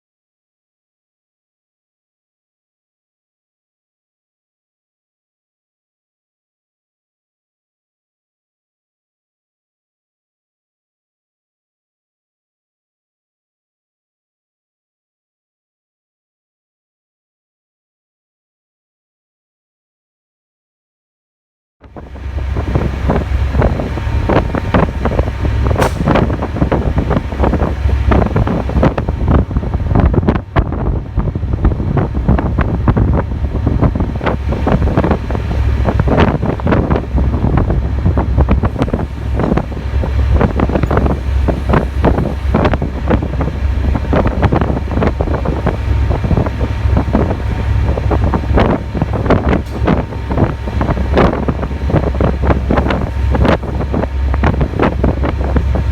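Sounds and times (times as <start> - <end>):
steady low rumble: 21.8 - 55.9
strong wind buffeting microphone: 21.8 - 55.9.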